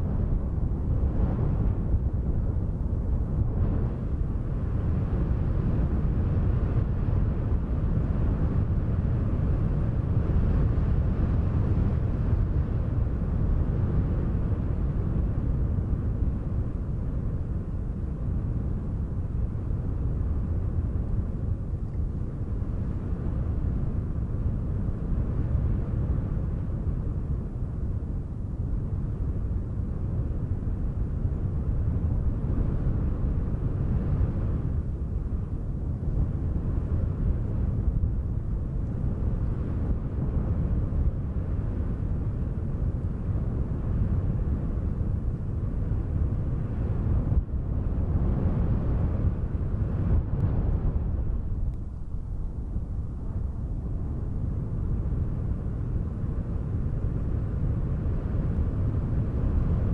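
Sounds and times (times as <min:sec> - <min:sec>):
wind blowing: 0:35.8 - 0:59.9.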